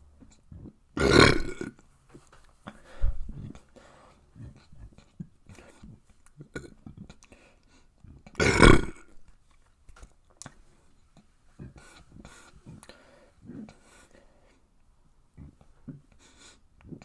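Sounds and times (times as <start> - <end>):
person burping: 1.0 - 1.8, 8.4 - 9.2.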